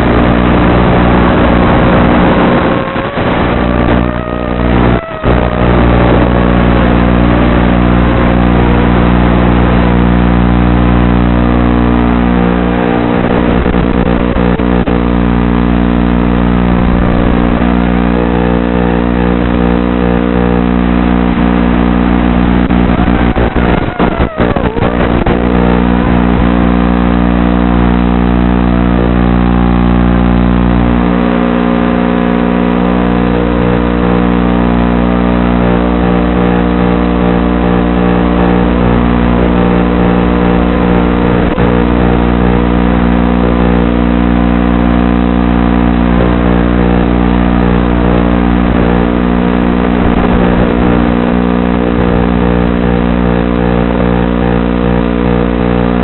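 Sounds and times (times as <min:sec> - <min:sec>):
steady electrical hum: 0:00.0 - 0:56.0
quadcopter motors whining: 0:00.1 - 0:08.6, 0:22.0 - 0:26.5.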